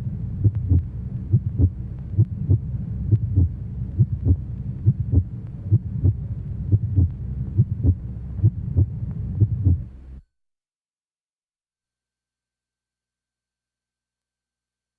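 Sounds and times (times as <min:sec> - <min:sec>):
low hum: 0:00.0 - 0:10.3
heartbeat thumps: 0:00.4 - 0:09.9.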